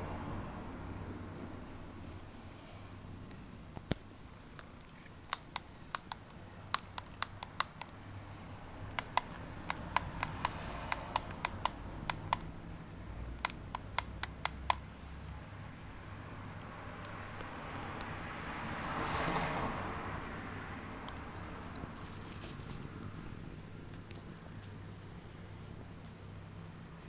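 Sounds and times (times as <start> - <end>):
alarm clock buttons clicking: 5.3 - 7.9, 8.9 - 12.5.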